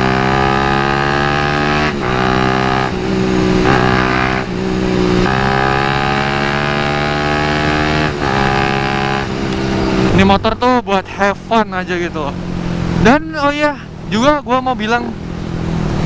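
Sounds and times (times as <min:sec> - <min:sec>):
motorcycle engine accelerating: 0:00.0 - 0:10.8.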